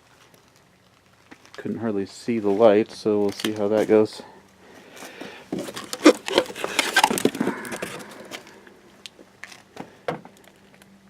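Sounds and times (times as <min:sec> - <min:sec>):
plastic packaging crackling: 0:05.6 - 0:08.5.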